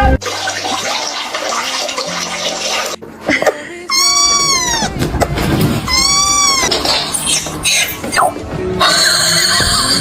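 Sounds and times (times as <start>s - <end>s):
cat meowing: 3.9s - 5.0s, 5.9s - 6.8s.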